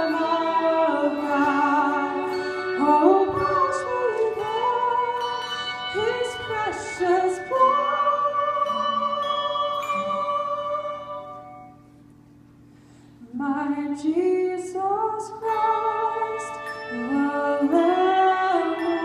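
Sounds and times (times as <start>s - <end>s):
people singing: 0.0s - 11.4s
handbell choir music: 0.0s - 12.0s, 15.0s - 19.0s.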